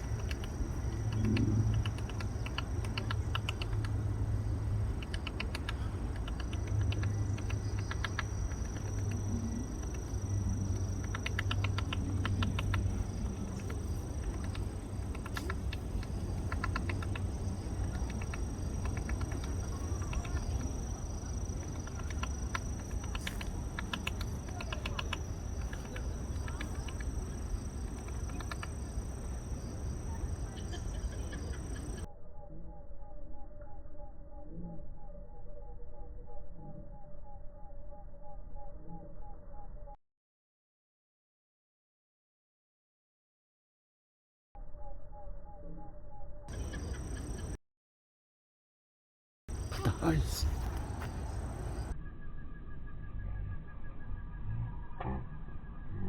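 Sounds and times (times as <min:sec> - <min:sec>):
woodpecker tapping wood: 0:00.0 - 0:04.0, 0:04.9 - 0:10.1, 0:10.7 - 0:20.8, 0:21.5 - 0:28.9.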